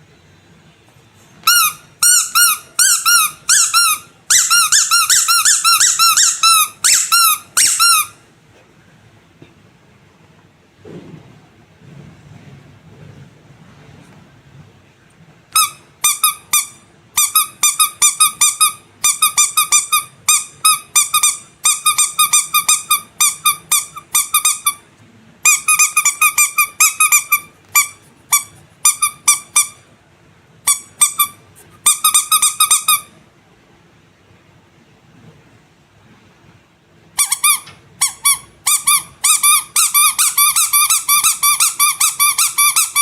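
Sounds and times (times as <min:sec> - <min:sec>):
squeaky rubber toys squeaking: 0:01.4 - 0:08.2, 0:15.5 - 0:24.8, 0:25.4 - 0:29.8, 0:30.6 - 0:33.2, 0:37.2 - 0:43.0.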